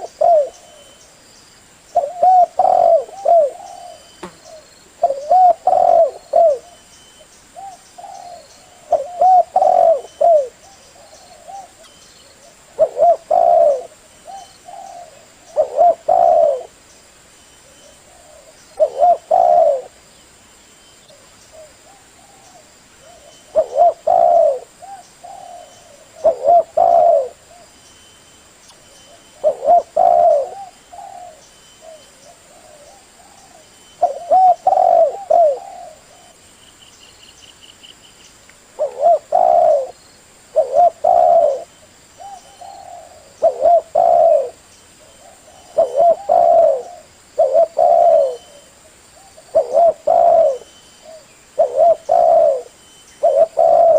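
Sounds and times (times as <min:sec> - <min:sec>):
dove cooing: 0:00.0 - 0:01.0, 0:01.9 - 0:06.9, 0:07.6 - 0:16.8, 0:17.6 - 0:20.0, 0:21.1 - 0:27.8, 0:29.1 - 0:36.4, 0:38.8 - 0:53.9.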